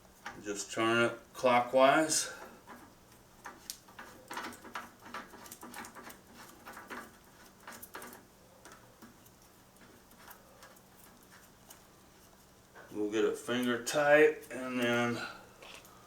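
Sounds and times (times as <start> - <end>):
metal parts clicking and tapping: 2.7 - 11.8.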